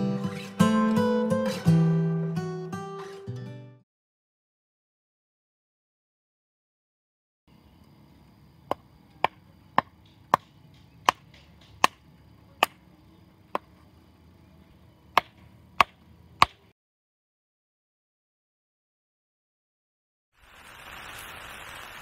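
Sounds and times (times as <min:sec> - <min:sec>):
sharp chopping knocks: 0:08.7 - 0:12.0, 0:15.2 - 0:16.6.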